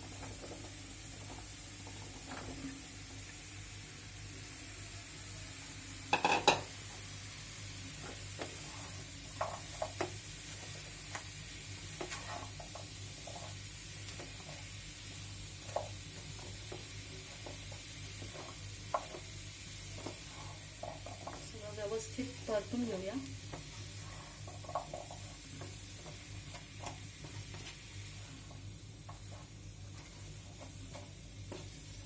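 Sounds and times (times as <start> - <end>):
food sizzling: 0.0 - 32.0
spatula scraping frying pan: 12.0 - 13.7.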